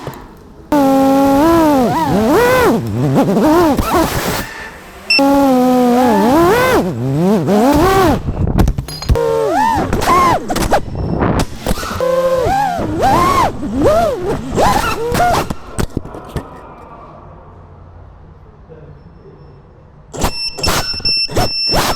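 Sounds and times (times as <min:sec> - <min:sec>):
drone motors and propellers whining: 0:00.7 - 0:08.4, 0:09.2 - 0:10.8, 0:11.4 - 0:15.9.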